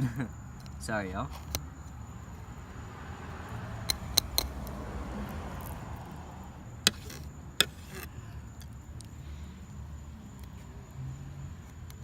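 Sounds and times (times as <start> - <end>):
knife scraping fish: 6.9 - 8.2.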